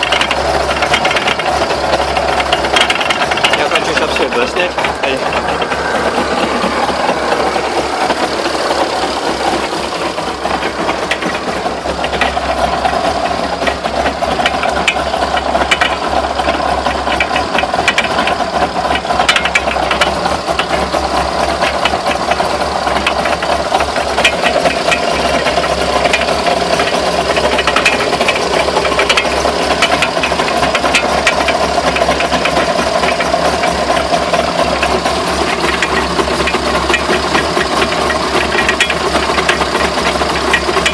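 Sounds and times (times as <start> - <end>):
car engine humming: 0.0 - 40.9
knocks and rattles: 0.0 - 40.9.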